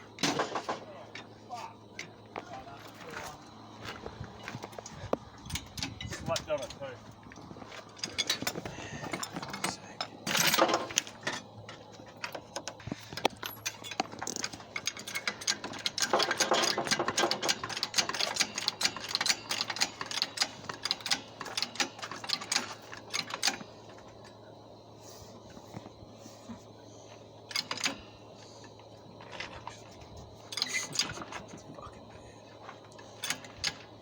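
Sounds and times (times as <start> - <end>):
hand tools clicking on metal: 4.4 - 11.5, 12.1 - 23.7, 30.5 - 31.5.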